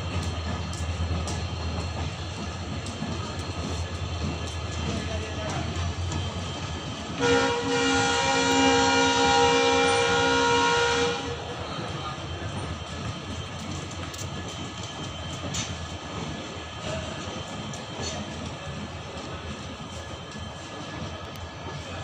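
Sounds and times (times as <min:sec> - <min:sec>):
train running noise: 0:00.0 - 0:22.0
diesel locomotive horn blast: 0:07.1 - 0:11.6.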